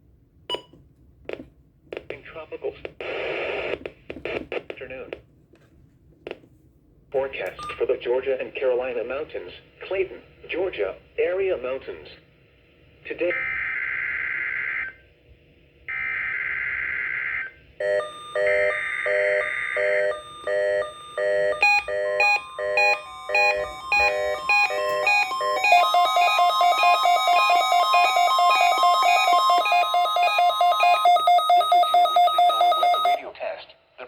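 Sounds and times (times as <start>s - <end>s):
steady warning alarm tone: 15.9s - 33.2s
beeping alert tones: 19.8s - 33.2s.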